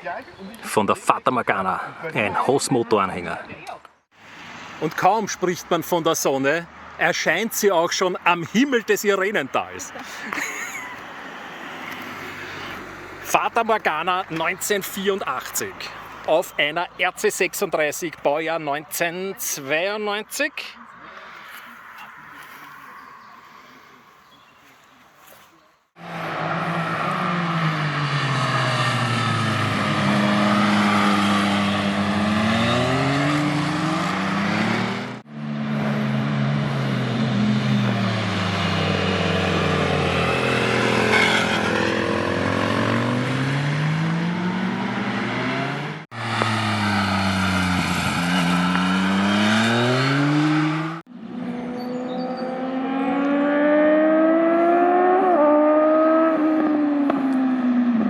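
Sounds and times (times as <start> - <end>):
motorcycle engine accelerating hard: 26.0 - 58.0.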